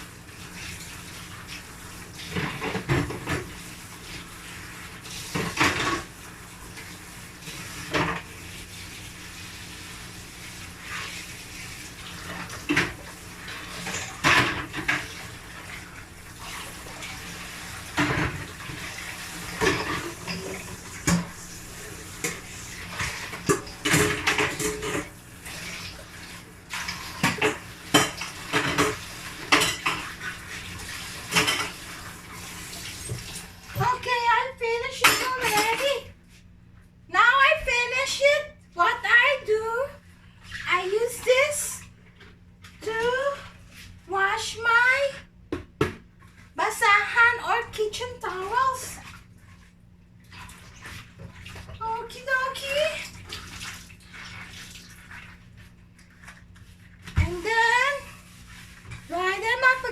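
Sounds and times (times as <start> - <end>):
running tap water: 0.0 - 36.2, 37.2 - 59.9
dishes and cutlery clinking: 23.1 - 25.0.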